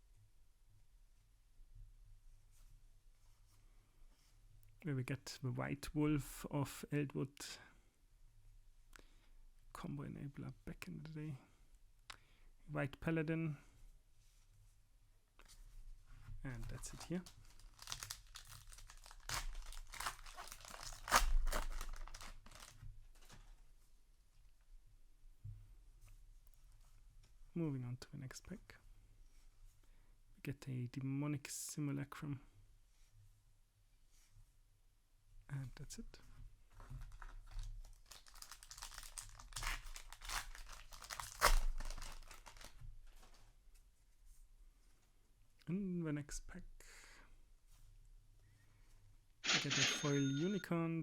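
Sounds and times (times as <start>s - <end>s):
wrapper crinkling and tearing: 16.7s - 23.5s, 37.0s - 43.4s.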